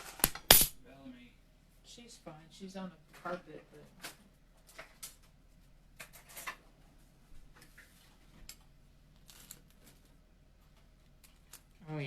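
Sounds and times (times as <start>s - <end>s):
faint clicks and light taps: 3.1s - 11.8s.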